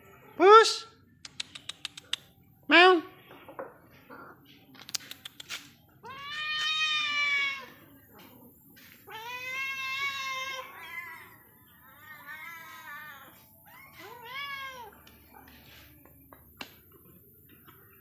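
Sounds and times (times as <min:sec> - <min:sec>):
cats meowing: 0:06.0 - 0:08.4, 0:09.0 - 0:15.1.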